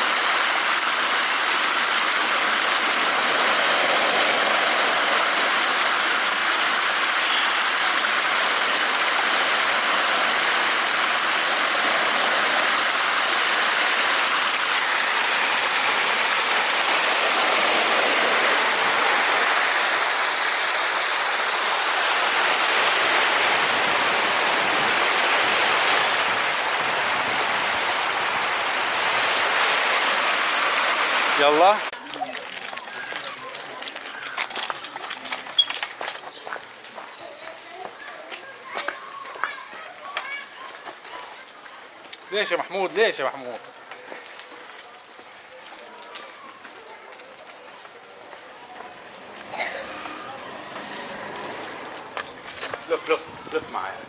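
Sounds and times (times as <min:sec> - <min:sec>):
rushing flowing water: 0:00.0 - 0:36.0, 0:48.9 - 0:54.0.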